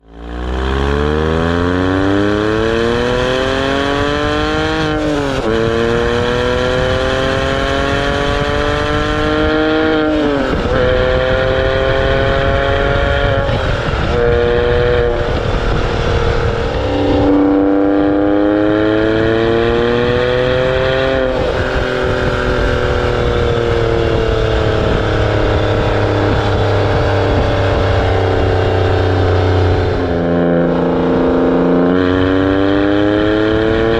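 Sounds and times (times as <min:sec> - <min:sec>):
car engine accelerating: 0:00.0 - 0:33.9.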